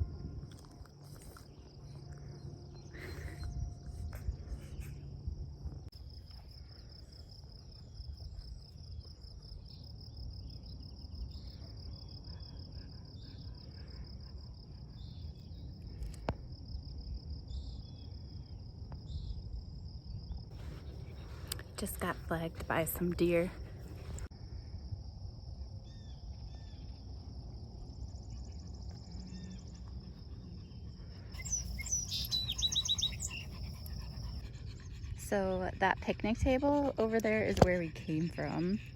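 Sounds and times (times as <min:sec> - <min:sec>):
low outdoor rumble: 0:00.0 - 0:25.5
insects trilling: 0:25.8 - 0:38.9.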